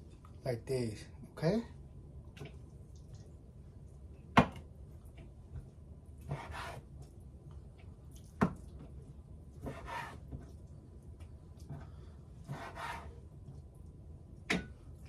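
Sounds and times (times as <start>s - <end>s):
knife scraping meat: 6.2s - 6.9s, 9.6s - 10.3s, 12.4s - 13.2s.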